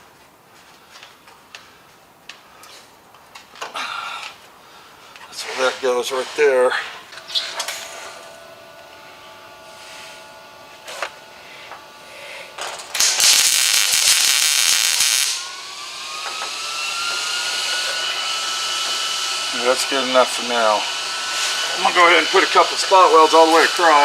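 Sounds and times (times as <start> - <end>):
electric motor whining: 5.6 - 24.0
loud hiss: 11.4 - 24.0.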